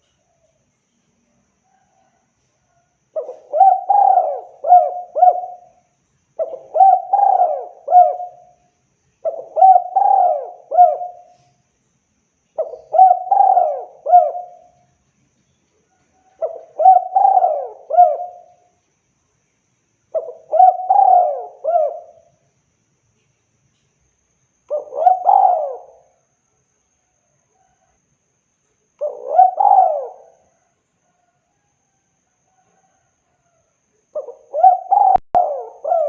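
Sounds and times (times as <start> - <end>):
dove cooing: 3.1 - 5.8, 6.4 - 8.6, 9.2 - 11.5, 12.6 - 14.8, 16.2 - 18.7, 20.1 - 22.4, 24.7 - 26.1, 29.0 - 31.7, 34.1 - 36.0.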